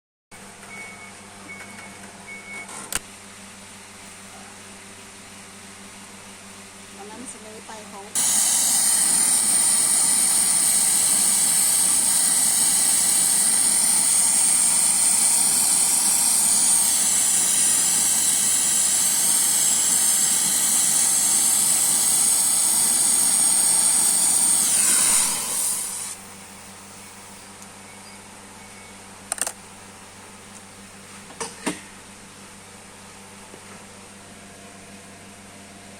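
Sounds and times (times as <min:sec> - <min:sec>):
refrigerant gas hissing: 0:08.2 - 0:27.6
sharp click: 0:29.3 - 0:29.6.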